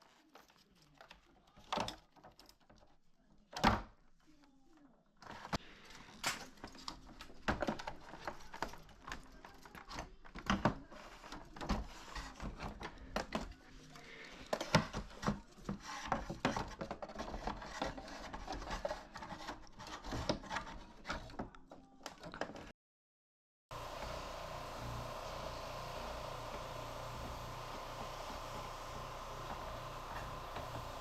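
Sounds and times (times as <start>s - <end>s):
plastic parts clicking and rubbing: 5.2s - 22.7s.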